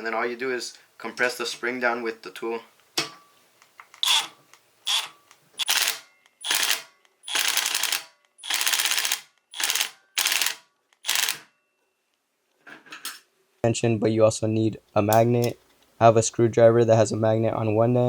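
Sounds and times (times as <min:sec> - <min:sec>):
ratchet clicking: 0:04.9 - 0:11.4.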